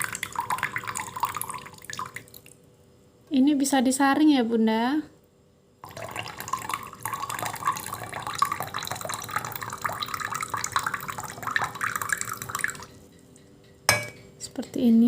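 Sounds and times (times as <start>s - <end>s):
syrup trickling into glass: 0.0s - 2.4s, 5.8s - 13.0s.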